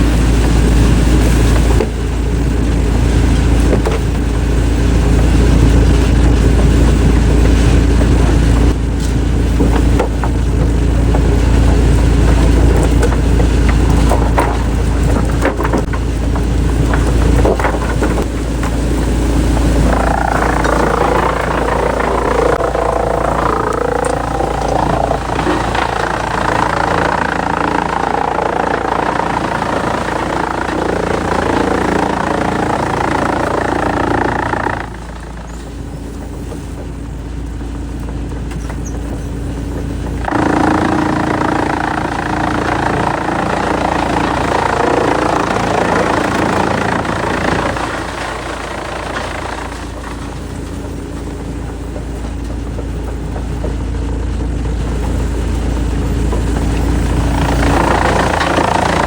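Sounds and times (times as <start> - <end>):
low engine hum: 0.0 - 59.0
wood-processing machinery running: 0.0 - 59.0.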